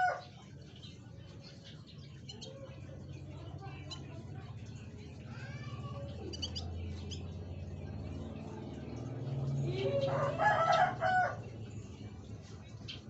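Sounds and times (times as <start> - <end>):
rooster crowing: 0.0 - 0.2, 9.9 - 11.5.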